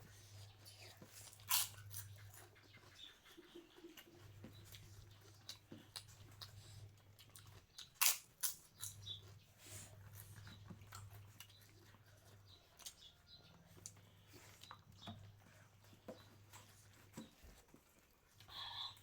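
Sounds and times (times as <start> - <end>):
person chewing and crunching: 0.2 - 15.1.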